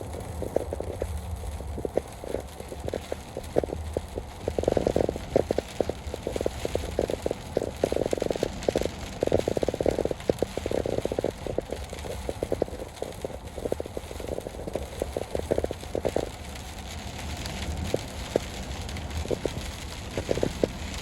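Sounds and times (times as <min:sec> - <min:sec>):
heavy rain pattering: 0:00.0 - 0:21.0
low steady rumble: 0:00.0 - 0:21.0.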